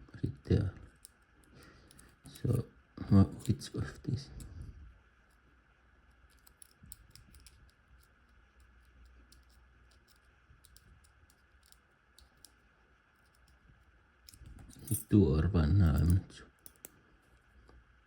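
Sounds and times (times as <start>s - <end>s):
padlock number wheels clicking: 6.1s - 12.6s, 16.0s - 16.9s.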